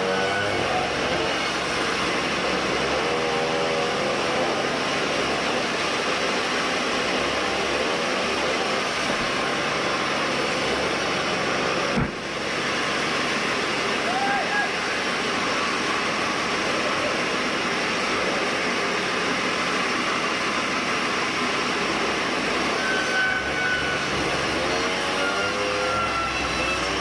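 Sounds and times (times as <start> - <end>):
band sawmill running: 0.0 - 27.0.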